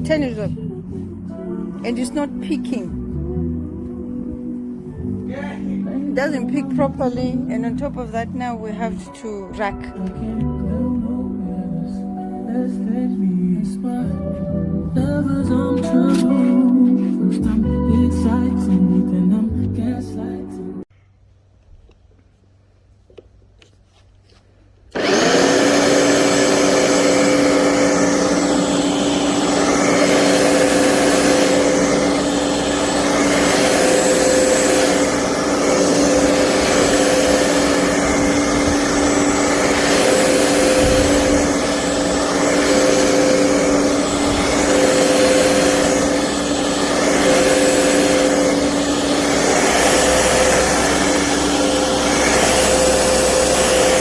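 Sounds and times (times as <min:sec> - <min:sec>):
electric lawnmower motor whining: 0:24.9 - 0:54.0.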